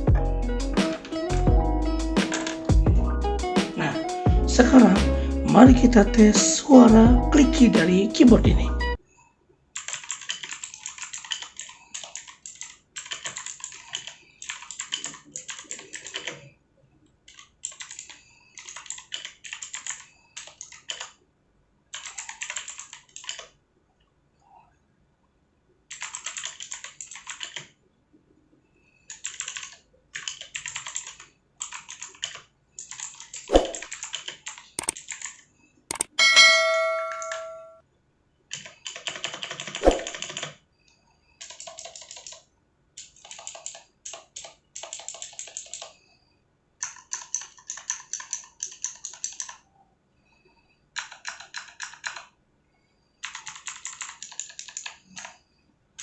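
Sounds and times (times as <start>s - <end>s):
clicky keyboard typing: 2.2s - 2.8s, 9.8s - 16.5s, 17.3s - 21.2s, 21.9s - 23.6s, 25.9s - 27.8s, 29.1s - 37.7s, 38.5s - 40.6s, 41.4s - 42.4s, 43.0s - 46.0s, 46.8s - 49.6s, 51.0s - 52.3s, 53.2s - 55.4s
bright ringing ding: 36.0s - 37.8s.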